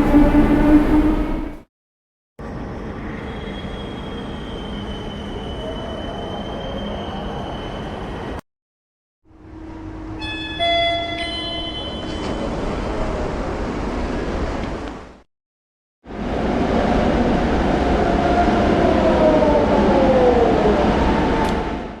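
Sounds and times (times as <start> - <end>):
metallic wheel screech: 0.0 - 1.6
subway train rumble: 0.0 - 1.7, 2.4 - 8.4, 9.4 - 15.2, 16.1 - 22.0.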